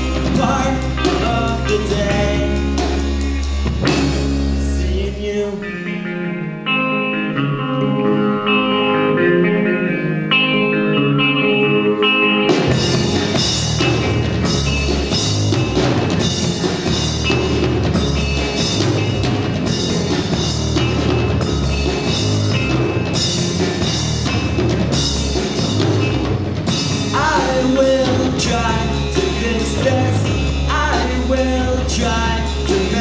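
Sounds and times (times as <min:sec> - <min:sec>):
drums: 0:00.0 - 0:33.0
guitar picking notes: 0:00.0 - 0:33.0
live rock band playing: 0:00.0 - 0:33.0.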